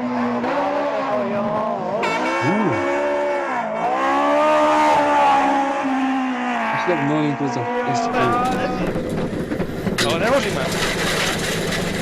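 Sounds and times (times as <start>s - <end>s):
rally car engine revving: 0.0s - 12.0s.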